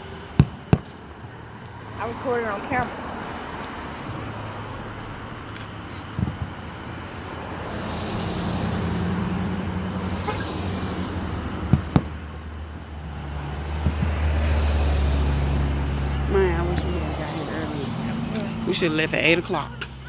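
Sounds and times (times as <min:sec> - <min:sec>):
traffic noise: 0:00.0 - 0:20.0
sharp pops: 0:00.4 - 0:01.7, 0:05.5 - 0:06.8, 0:11.6 - 0:12.2, 0:13.8 - 0:14.5
car engine running: 0:05.0 - 0:20.0.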